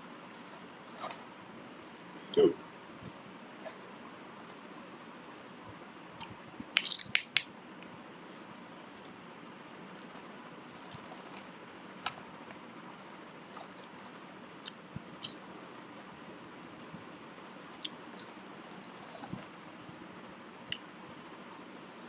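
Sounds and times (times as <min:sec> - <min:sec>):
low steady hiss: 0:00.0 - 0:22.0
sharp clicks and taps: 0:06.8 - 0:07.5.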